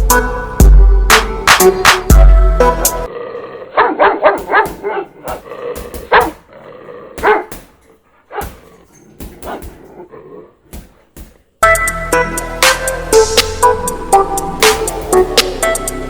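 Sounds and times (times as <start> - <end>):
dog barking: 3.8 - 6.5, 7.2 - 7.6, 8.2 - 8.7, 9.4 - 9.8.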